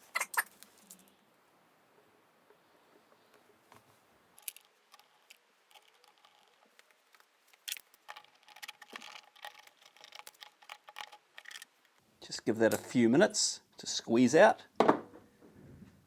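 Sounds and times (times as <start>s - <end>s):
clicks of hand tools and screws: 4.4s - 12.0s.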